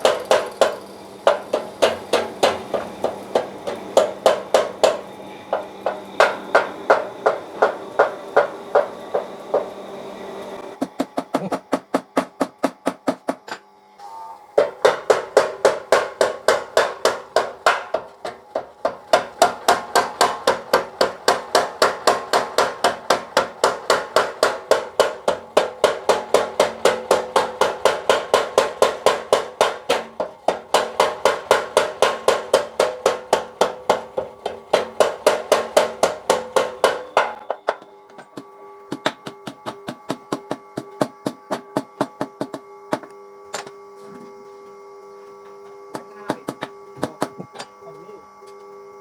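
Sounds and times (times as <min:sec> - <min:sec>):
power hammer striking hot steel: 0:00.0 - 0:13.6, 0:14.6 - 0:43.8
anvil ringing: 0:28.6 - 0:38.0.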